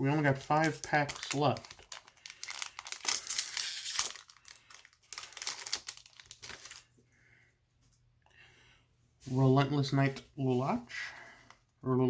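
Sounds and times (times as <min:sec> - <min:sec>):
foil wrapper tearing and crinkling: 0:00.1 - 0:06.9.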